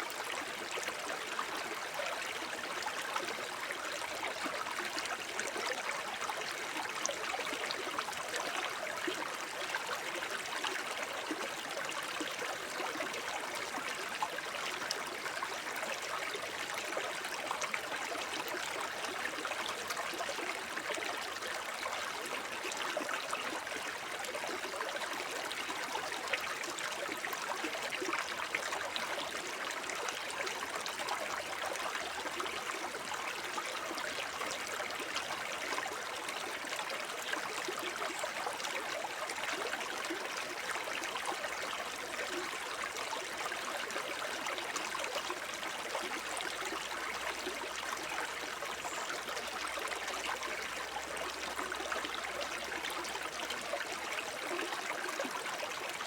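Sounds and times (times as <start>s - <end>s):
brook babbling over stones: 0.0s - 56.0s.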